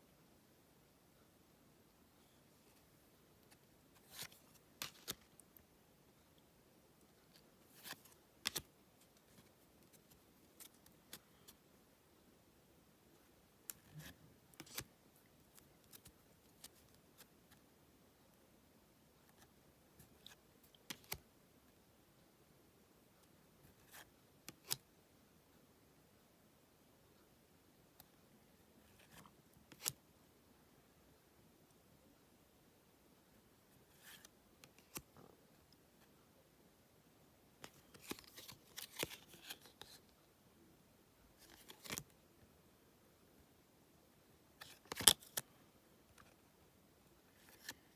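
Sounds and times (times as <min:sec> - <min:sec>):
cards rustling: 0:04.0 - 0:05.4, 0:07.7 - 0:11.5, 0:37.6 - 0:40.0, 0:41.4 - 0:42.1, 0:44.6 - 0:45.4, 0:47.4 - 0:47.9.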